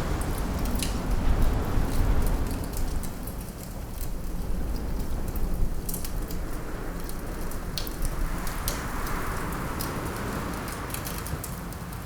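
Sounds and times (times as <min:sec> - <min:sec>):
rushing wind: 0:00.0 - 0:11.0.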